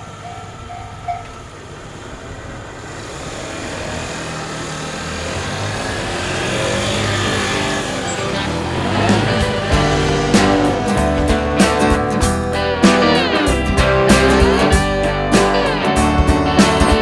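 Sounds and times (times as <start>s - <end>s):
railroad crossing bell: 0.0s - 2.3s
vehicle engine and tyres: 0.0s - 17.0s.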